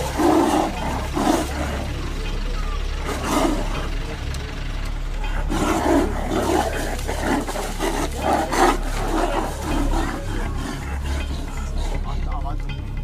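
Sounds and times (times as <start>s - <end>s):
low rumble: 0.0s - 13.0s
wild animal calling in pulses: 5.3s - 12.3s.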